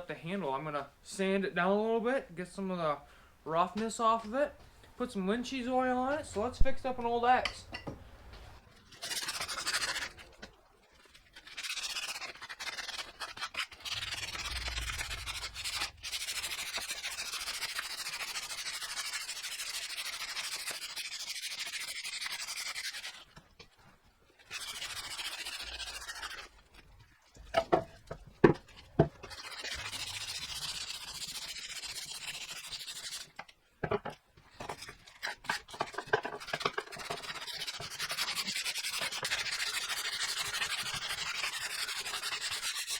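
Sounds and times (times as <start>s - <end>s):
sandpaper rubbing on wood: 8.9s - 10.2s, 11.3s - 23.2s, 24.4s - 26.5s, 29.3s - 33.3s, 34.8s - 42.9s.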